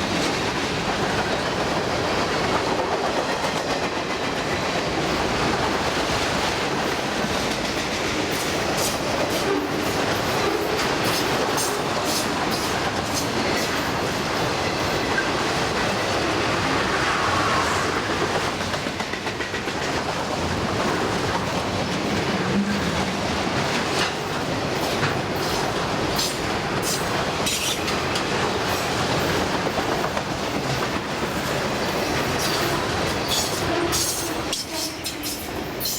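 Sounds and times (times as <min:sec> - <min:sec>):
freight train cars rumbling past: 0:00.0 - 0:35.9
wheels clicking over rail joints: 0:18.5 - 0:35.9.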